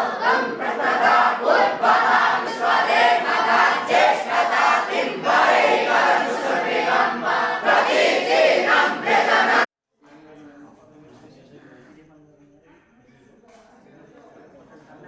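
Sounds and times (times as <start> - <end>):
boys chanting together: 0.0 - 9.7.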